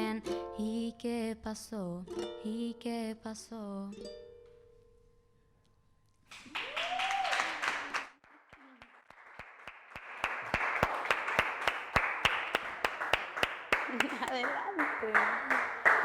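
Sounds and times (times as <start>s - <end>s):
small group applauding: 6.3s - 16.0s
person whooping: 6.4s - 8.0s.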